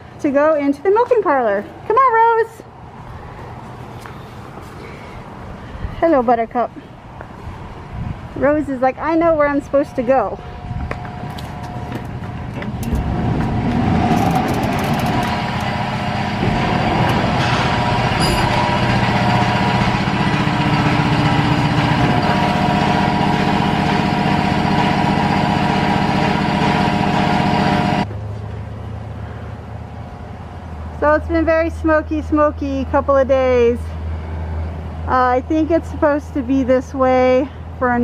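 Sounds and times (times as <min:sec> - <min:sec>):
milking machinery drone: 0:08.9 - 0:28.1.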